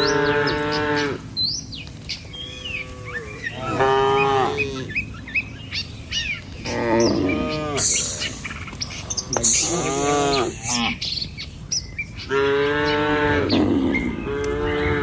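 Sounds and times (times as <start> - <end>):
cattle mooing: 0.0 - 1.3, 2.4 - 5.0, 6.6 - 8.5, 9.2 - 11.0, 12.3 - 15.0
small birds chirping: 0.0 - 15.0.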